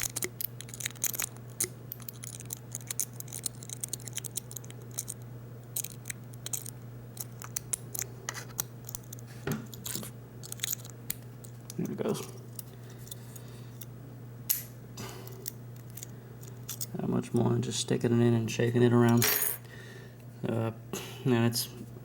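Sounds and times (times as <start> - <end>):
lock pick scratching and clicking: 0.0 - 13.4, 15.4 - 16.9.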